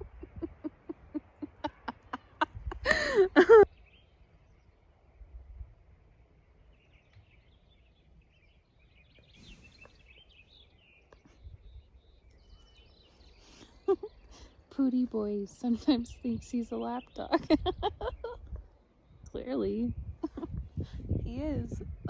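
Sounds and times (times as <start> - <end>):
faint bird chirps: 3.4 - 15.1.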